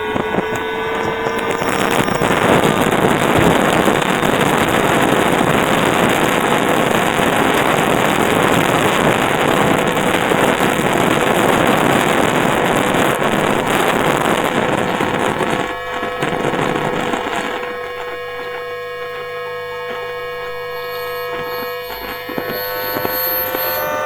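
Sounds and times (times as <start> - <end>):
dense electrical switching noise: 0.0 - 24.0
faint steady tone: 0.0 - 24.0.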